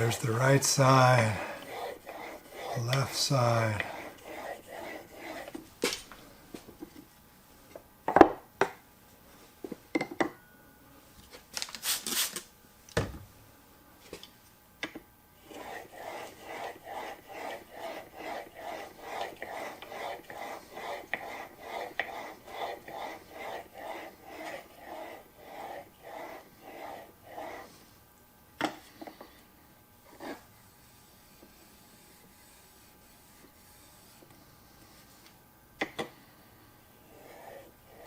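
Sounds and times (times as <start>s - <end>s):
blade rubbing on sharpening stone: 0.0s - 5.6s, 15.5s - 27.7s.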